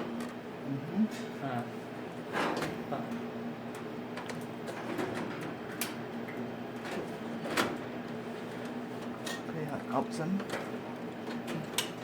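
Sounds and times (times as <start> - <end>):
equipment humming: 0.0 - 12.0.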